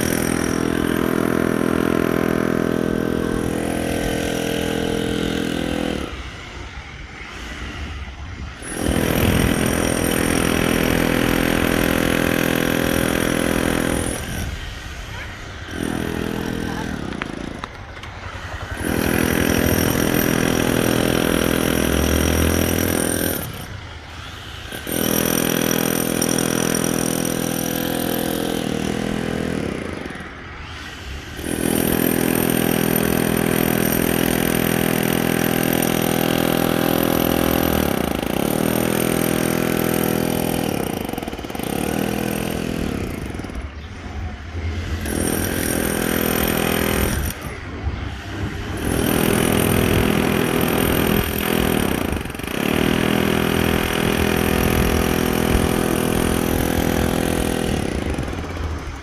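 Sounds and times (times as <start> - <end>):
demolition hammer breaking concrete: 18.8 - 23.7, 31.4 - 43.5, 48.8 - 59.0.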